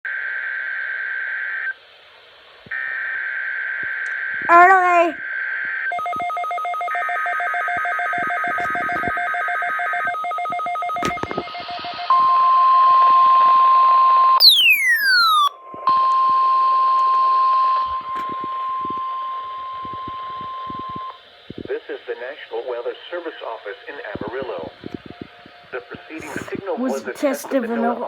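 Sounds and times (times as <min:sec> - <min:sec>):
radio static: 0:08.5 - 0:09.1, 0:19.9 - 0:28.0
falling whistle-like sweep: 0:14.4 - 0:15.5
warbling data bursts: 0:14.4 - 0:15.5
steady alarm tone: 0:14.4 - 0:21.2.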